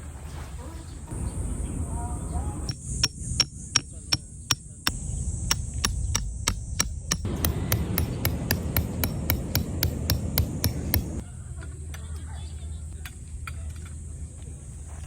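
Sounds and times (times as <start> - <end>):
hammer striking ringing: 2.7 - 11.2.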